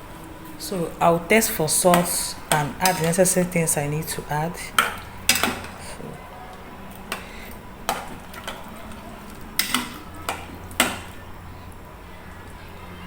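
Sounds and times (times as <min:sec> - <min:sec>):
metal utensil clinking against pot: 0:01.8 - 0:04.1, 0:04.7 - 0:05.9, 0:07.9 - 0:11.2.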